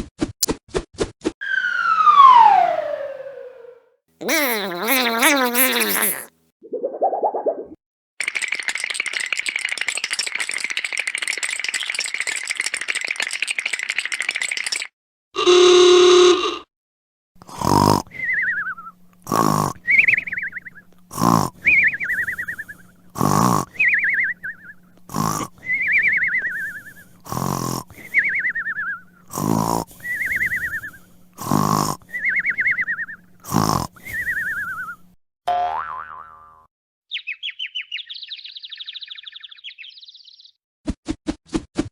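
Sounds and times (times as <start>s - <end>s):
descending whistle: 1.4s - 3.8s
cartoon snoring snort: 4.2s - 6.3s, 17.5s - 18.2s, 19.2s - 20.0s, 21.1s - 21.7s, 23.2s - 23.8s, 25.1s - 25.5s, 27.2s - 28.0s, 29.3s - 30.6s, 31.4s - 32.2s, 33.4s - 34.2s.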